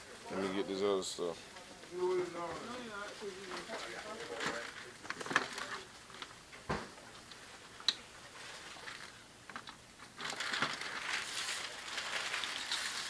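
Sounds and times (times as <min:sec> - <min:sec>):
wrapping paper rustling: 0:01.7 - 0:06.4, 0:08.2 - 0:13.0.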